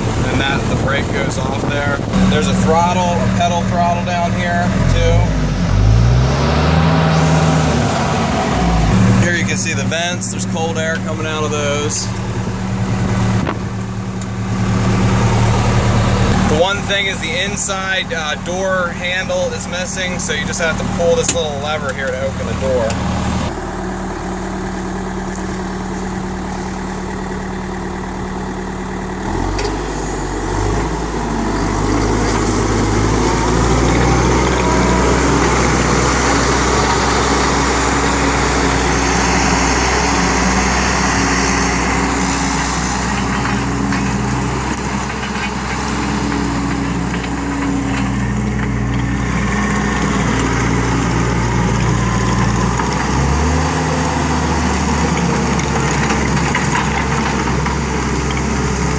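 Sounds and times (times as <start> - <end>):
diesel engine running: 0.0 - 58.9.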